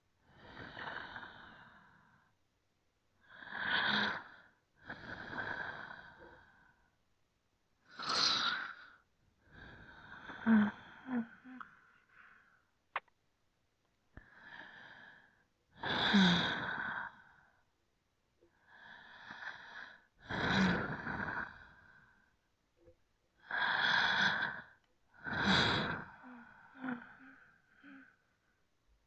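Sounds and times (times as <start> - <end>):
person breathing slowly and deeply: 7.8 - 12.7, 23.4 - 28.5.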